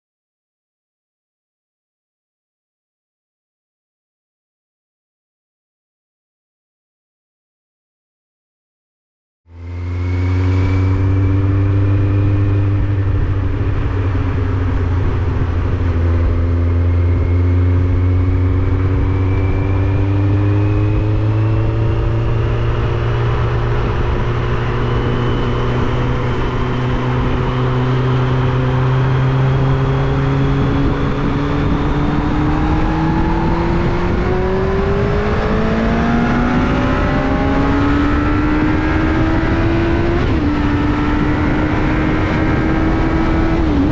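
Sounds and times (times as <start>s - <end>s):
low wind rumble: 9.5s - 43.9s
motorcycle engine running: 9.5s - 43.9s.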